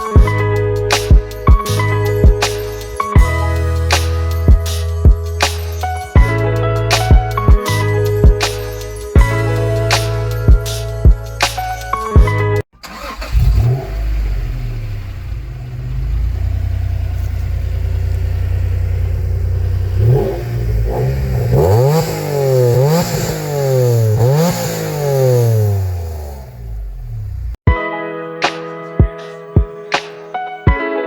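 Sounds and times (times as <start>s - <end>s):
car engine idling and revving: 12.8s - 27.6s.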